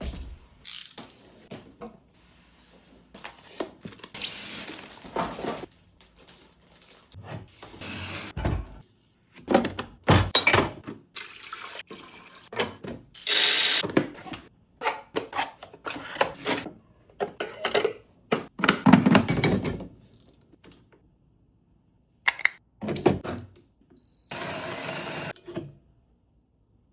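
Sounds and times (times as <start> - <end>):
cardboard and plastic packaging rustling: 3.1 - 7.8.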